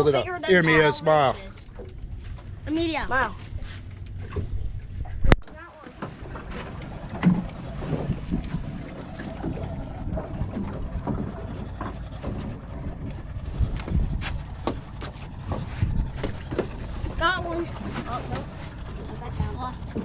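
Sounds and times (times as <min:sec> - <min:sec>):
wind buffeting the microphone: 0:06.2 - 0:20.0.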